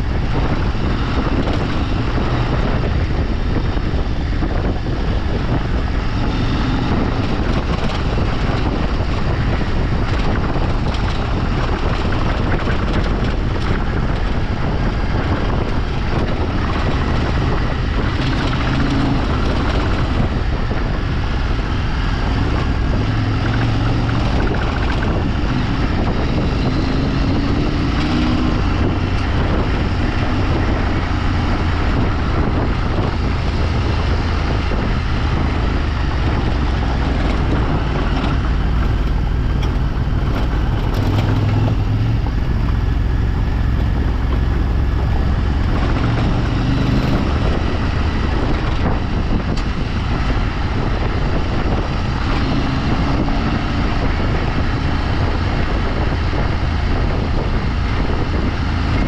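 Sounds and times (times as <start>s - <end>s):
off-road vehicle engine running: 0.0s - 59.0s
wind noise on microphone: 0.0s - 59.0s.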